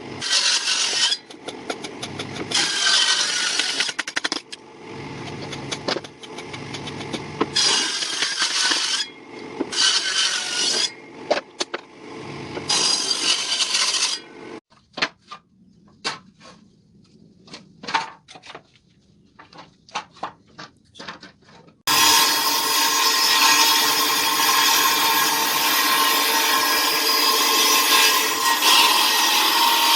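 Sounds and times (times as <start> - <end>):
dense steady tool sound: 0.0 - 14.6.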